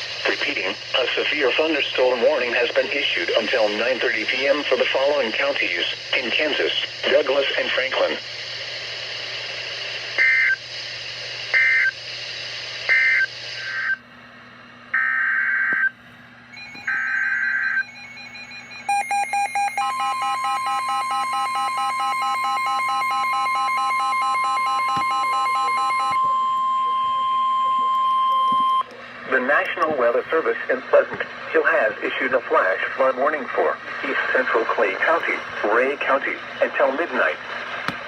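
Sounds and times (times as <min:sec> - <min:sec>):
steady alarm tone: 0:16.5 - 0:28.9
screechy digital data bursts: 0:16.6 - 0:26.1
rapid pulsing beeps: 0:16.6 - 0:28.9.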